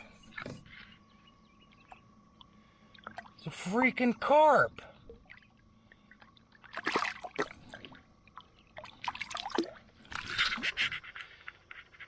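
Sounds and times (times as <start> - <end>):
water splashing and dripping: 6.6 - 10.2.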